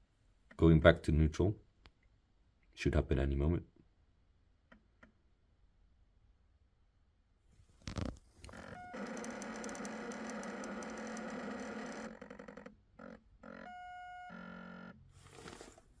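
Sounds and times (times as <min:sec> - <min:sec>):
solenoids buzzing: 0:08.5 - 0:12.2.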